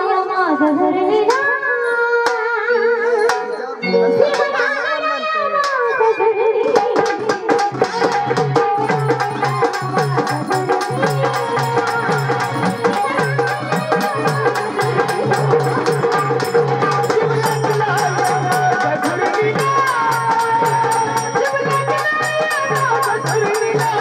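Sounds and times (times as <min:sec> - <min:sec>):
fast hand drum rhythm: 0:06.8 - 0:24.0.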